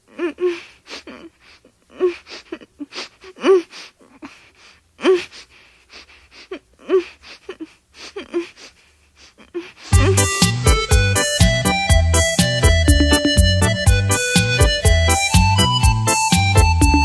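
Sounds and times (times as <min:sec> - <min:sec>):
sampled gasping vocal cries: 0:00.0 - 0:11.3
music with heavy bass line: 0:09.9 - 0:17.0.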